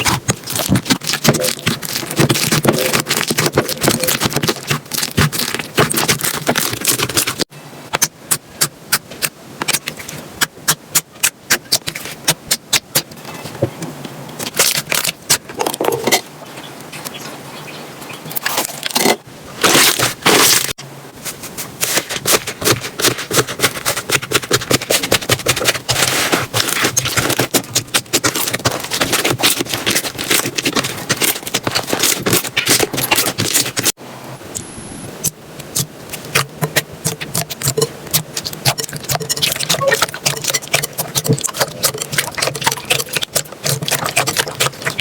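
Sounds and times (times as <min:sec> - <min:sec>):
slime crackling and popping: 0:00.0 - 0:07.5, 0:22.6 - 0:34.0, 0:35.2 - 0:45.0.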